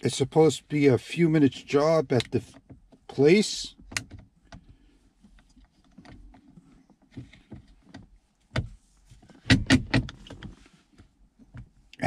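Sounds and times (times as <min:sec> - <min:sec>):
loud plastic knocks: 0:09.4 - 0:10.4.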